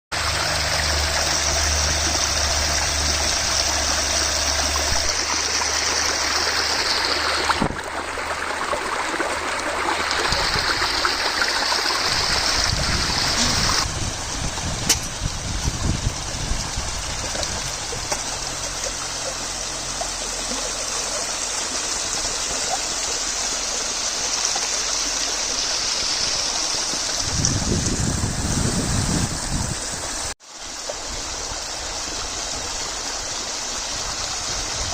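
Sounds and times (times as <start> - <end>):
stream water flowing: 0.1 - 34.9.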